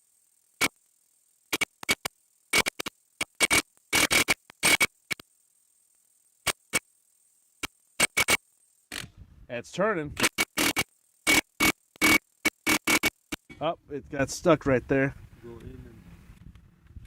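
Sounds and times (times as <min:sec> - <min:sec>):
impact wrench hammering: 0:10.2 - 0:13.5.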